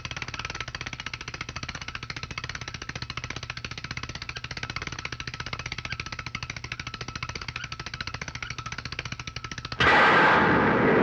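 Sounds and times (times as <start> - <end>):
rapid rattle of strikes: 9.4 - 11.0.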